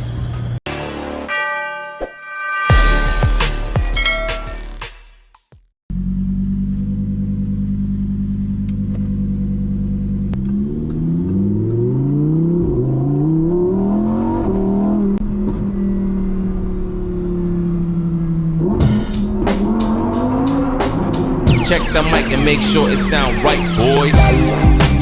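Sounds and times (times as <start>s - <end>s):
truck engine revving: 9.4s - 25.0s.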